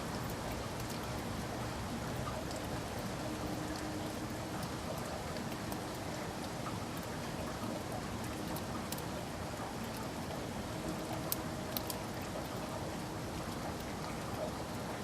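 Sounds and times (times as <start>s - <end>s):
steady rainfall: 0.0s - 15.0s.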